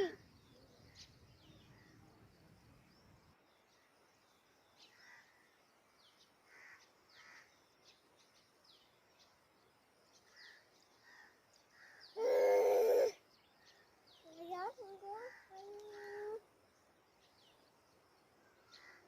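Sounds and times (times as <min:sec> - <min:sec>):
small birds chirping: 0:00.0 - 0:19.0
loud harsh bird call: 0:11.1 - 0:13.2.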